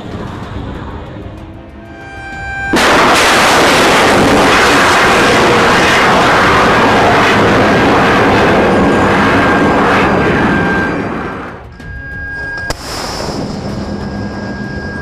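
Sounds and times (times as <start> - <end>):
rocket motor roaring: 0.0 - 15.0.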